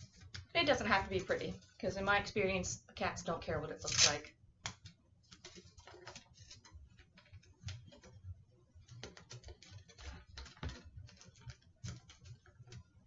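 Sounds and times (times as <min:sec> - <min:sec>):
masking tape ripping: 0:03.8 - 0:04.2.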